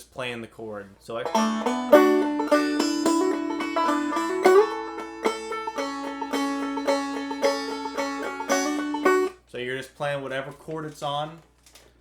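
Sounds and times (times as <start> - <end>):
banjo playing: 1.1 - 9.4.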